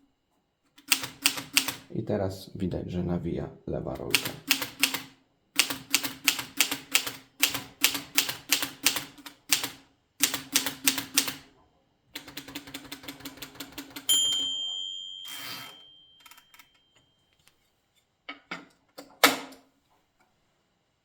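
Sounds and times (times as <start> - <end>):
typewriter carriage return rasp: 0.8 - 1.9, 4.0 - 11.4, 15.3 - 16.8
typewriter keystroke clacks: 0.8 - 1.9, 4.0 - 11.5
typewriter margin bell ringing: 13.6 - 17.1.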